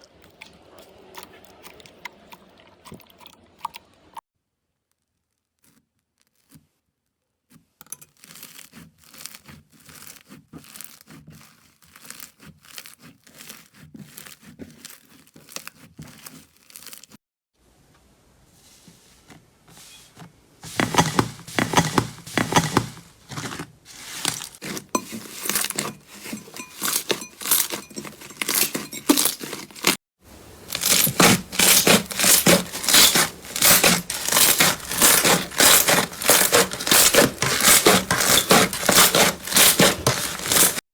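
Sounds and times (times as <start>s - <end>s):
slime crackling and popping: 8.2s - 17.2s, 30.6s - 40.8s.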